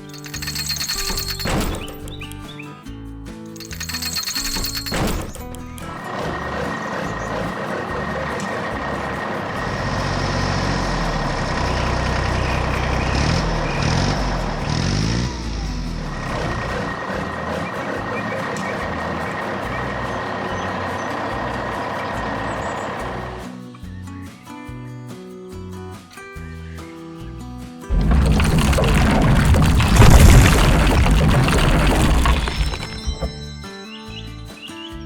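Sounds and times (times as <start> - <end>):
construction vehicle engine revving: 6.2 - 18.4.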